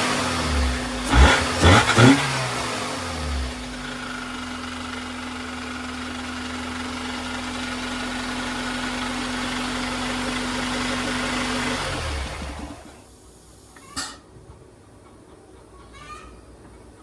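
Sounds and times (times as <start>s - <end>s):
car engine idling: 0.0s - 12.9s.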